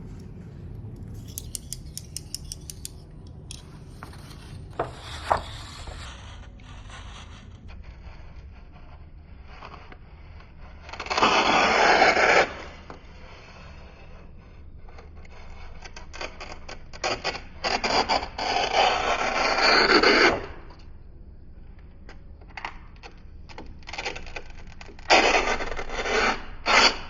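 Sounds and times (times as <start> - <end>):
scissors snipping paper: 1.0 - 6.0
sharp clicks: 1.2 - 3.4
loud scraping cut: 4.1 - 14.2
scratchy rasp: 4.1 - 20.6, 23.6 - 27.0.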